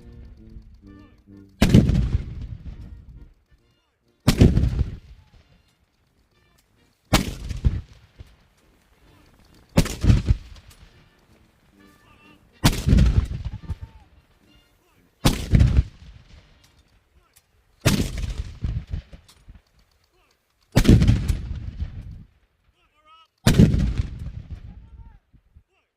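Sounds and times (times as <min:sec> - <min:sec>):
cannon booms: 0:04.3 - 0:05.0, 0:12.6 - 0:13.8, 0:15.2 - 0:16.0, 0:17.9 - 0:19.2, 0:20.8 - 0:22.0, 0:23.5 - 0:24.8.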